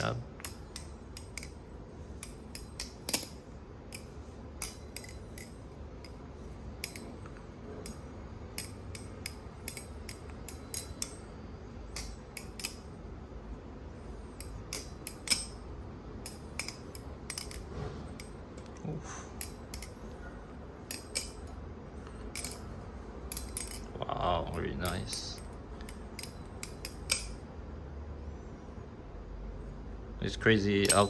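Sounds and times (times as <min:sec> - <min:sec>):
butterfly knife clicking and clacking: 0:25.4 - 0:27.4.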